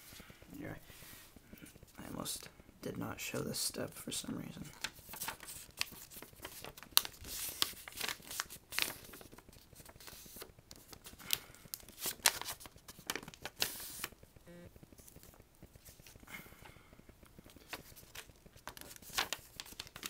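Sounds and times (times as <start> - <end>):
paper rustling and crinkling: 4.6 - 14.2, 14.9 - 16.4, 17.4 - 20.0
sharp paper creasing: 4.8 - 14.2, 17.6 - 20.0.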